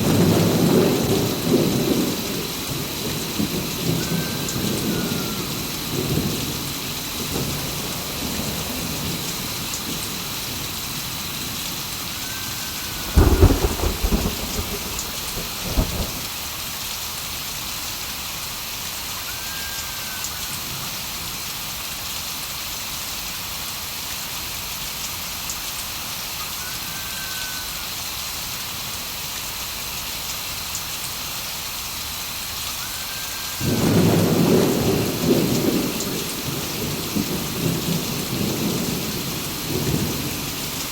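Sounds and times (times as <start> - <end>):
thunder cracking and rumbling: 0.0 - 16.4, 33.6 - 40.9
steady rain: 0.0 - 40.9.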